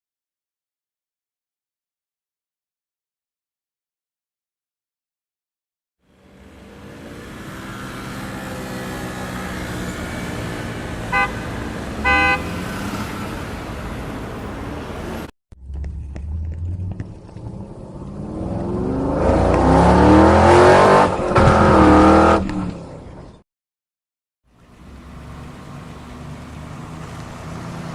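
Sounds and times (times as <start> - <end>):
car engine revving: 6.4 - 22.8
car horn honks: 11.1 - 12.6
car engine running: 15.6 - 18.8.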